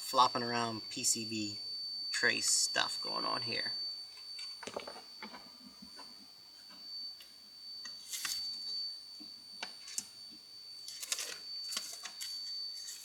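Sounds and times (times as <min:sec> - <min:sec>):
faint high-pitched whine: 0:00.0 - 0:13.0
small tools clicking and tapping: 0:09.6 - 0:10.1.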